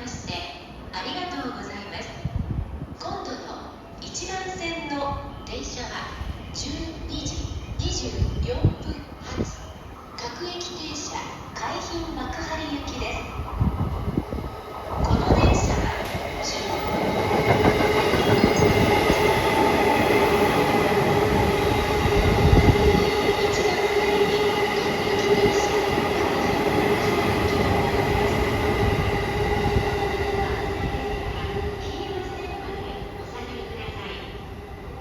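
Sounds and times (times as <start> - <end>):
train wheels rumbling on rail: 7.0 - 35.0.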